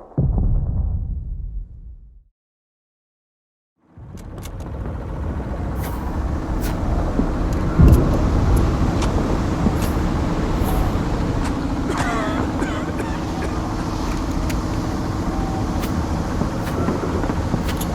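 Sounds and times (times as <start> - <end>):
loud thud: 0.0 - 2.2
heavy engine running: 3.9 - 17.9.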